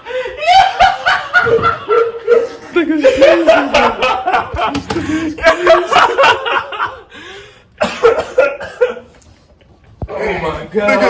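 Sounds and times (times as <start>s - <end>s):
man laughing: 0.1s - 7.1s
man coughing: 7.8s - 9.1s.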